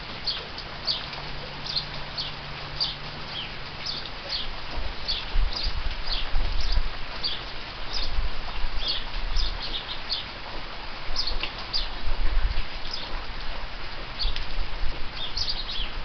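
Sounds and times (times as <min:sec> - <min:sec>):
steady rain: 0:00.0 - 0:16.0
sparrows chirping: 0:00.2 - 0:08.2, 0:08.8 - 0:10.3, 0:11.2 - 0:12.0, 0:12.9 - 0:13.1, 0:14.2 - 0:14.4, 0:15.1 - 0:16.0.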